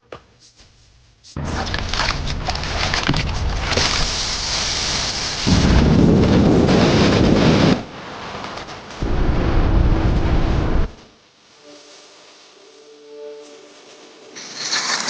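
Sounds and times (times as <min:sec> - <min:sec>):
deep rumble: 0:01.4 - 0:08.3, 0:08.9 - 0:11.1.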